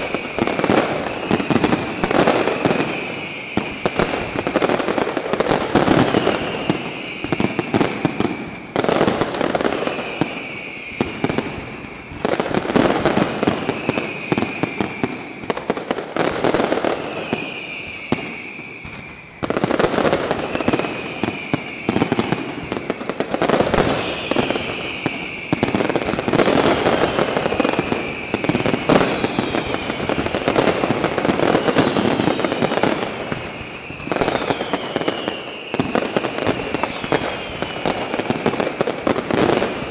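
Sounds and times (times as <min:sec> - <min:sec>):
fireworks bangs and crackle: 0:00.0 - 0:39.9
whistling tone dipping in pitch: 0:33.8 - 0:35.9.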